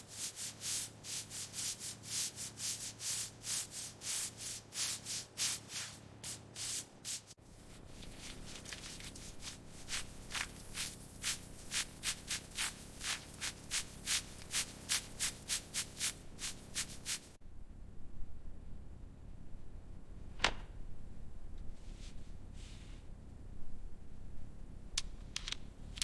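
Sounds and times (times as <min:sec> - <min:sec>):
hand sanding strokes: 0:00.0 - 0:17.4.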